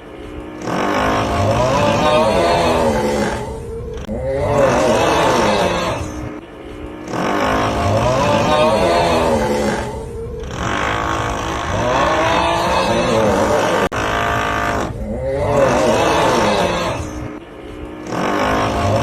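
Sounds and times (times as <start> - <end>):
drilling noise: 7.0 - 17.4.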